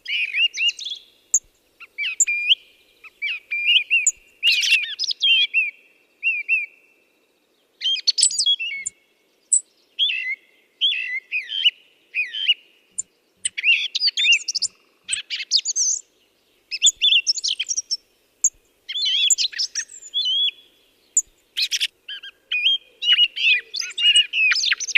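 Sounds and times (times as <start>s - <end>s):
birds chirping: 0.0s - 24.9s.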